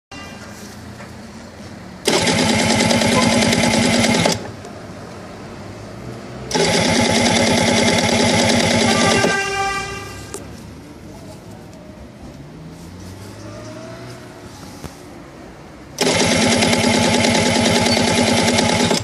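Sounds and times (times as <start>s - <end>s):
engine cranking with electric starter: 2.0s - 4.6s, 6.5s - 9.4s, 16.0s - 19.0s.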